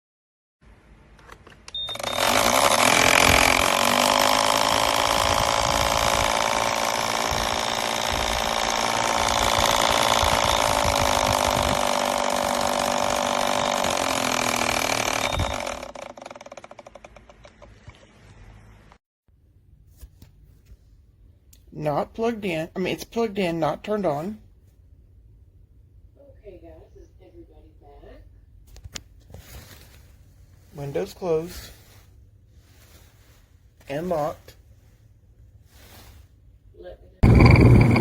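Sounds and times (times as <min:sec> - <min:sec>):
small electric motor whirring: 0:01.9 - 0:17.2, 0:37.2 - 0:38.0.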